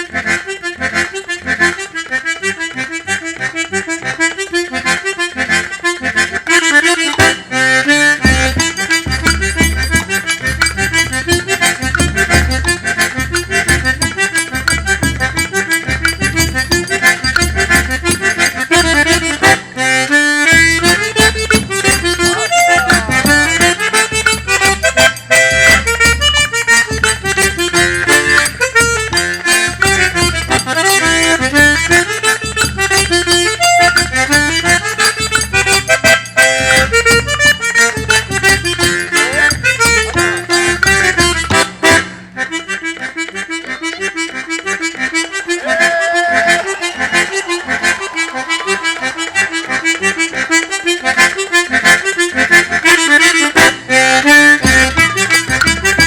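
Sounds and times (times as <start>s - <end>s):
accordion melody: 0.0s - 56.0s
low bass beat: 7.1s - 19.6s, 20.2s - 34.8s.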